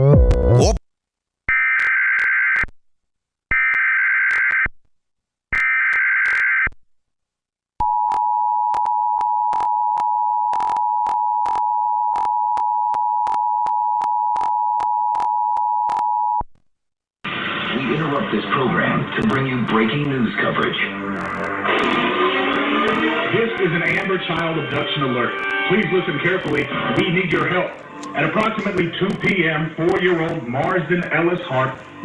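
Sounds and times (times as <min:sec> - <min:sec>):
buzzy digital header tones: 0:19.8 - 0:32.0.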